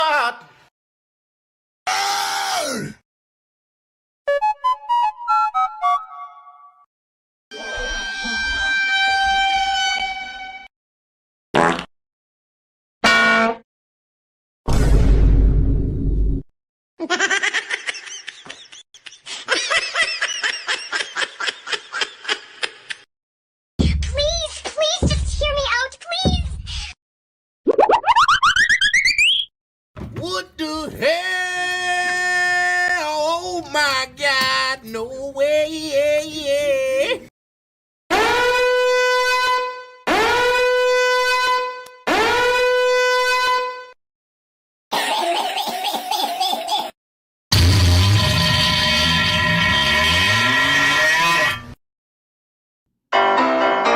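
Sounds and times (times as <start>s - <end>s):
horn blasts: 38.2s - 43.9s, 47.5s - 51.7s
high-pitched laughter effect: 45.0s - 46.9s.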